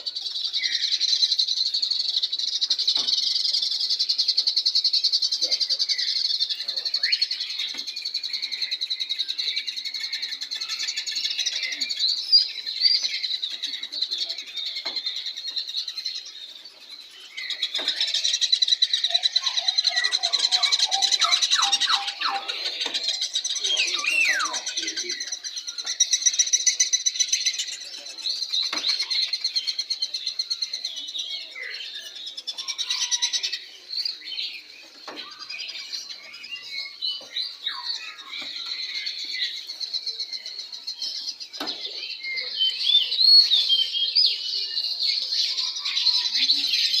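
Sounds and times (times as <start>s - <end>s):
caged birds chirping and trilling: 0.0s - 47.0s.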